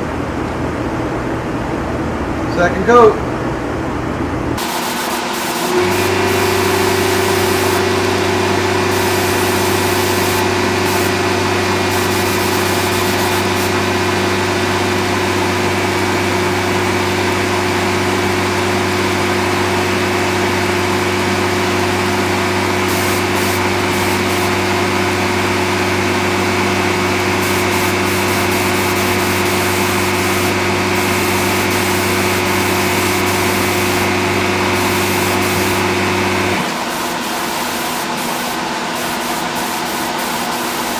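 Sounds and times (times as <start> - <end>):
machine motor humming: 0.0 - 40.9
air hissing: 4.6 - 13.8.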